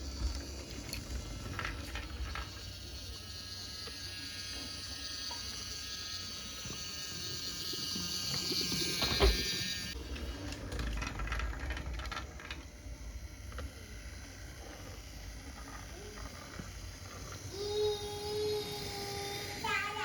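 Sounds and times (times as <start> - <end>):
toy train motor whining: 0.0 - 20.0.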